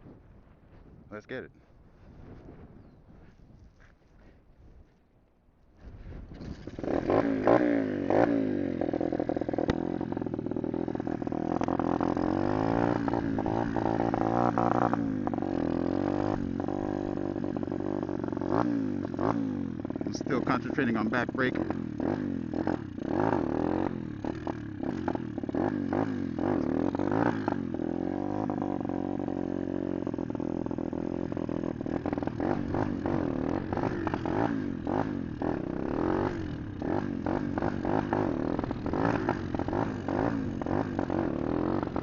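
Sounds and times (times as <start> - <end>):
wind buffeting microphone: 0.0 - 4.9
pit bike engine revving: 6.4 - 42.0.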